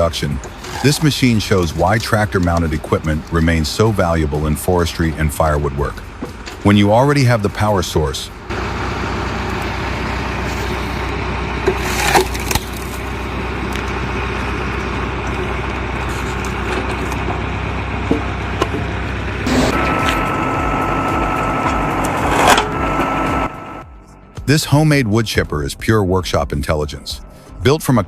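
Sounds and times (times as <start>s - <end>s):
tractor engine running: 0.0s - 25.6s
logs cracking and splintering: 0.2s - 3.5s, 11.7s - 18.7s
machine whine: 8.3s - 25.0s.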